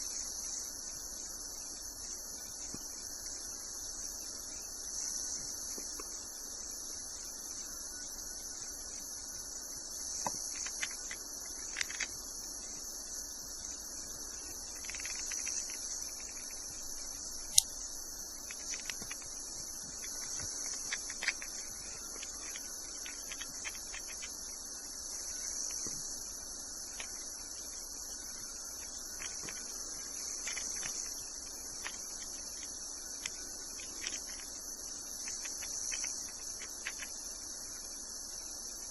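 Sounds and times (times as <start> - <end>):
sharp click: 17.5 - 17.7.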